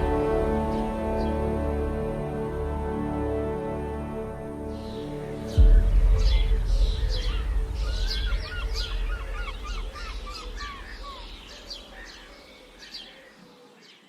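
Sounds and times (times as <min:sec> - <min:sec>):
songbirds chirping and singing: 0:00.0 - 0:14.0
low rumble: 0:04.8 - 0:12.2.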